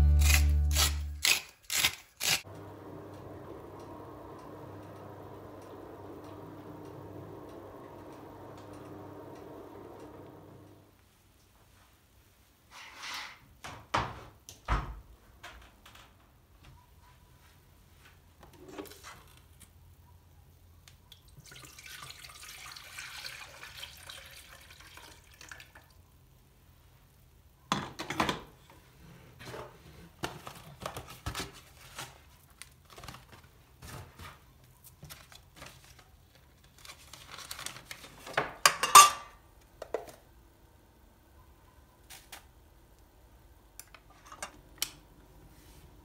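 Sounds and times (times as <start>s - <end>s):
water running softly: 21.0s - 27.0s
dishes and utensils clinking: 38.7s - 39.4s.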